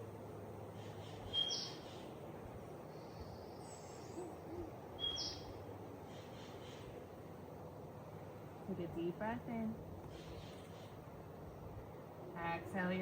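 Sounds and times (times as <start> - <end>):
outdoor background hiss: 0.0 - 13.0
bird calling: 0.8 - 2.2, 2.9 - 7.0.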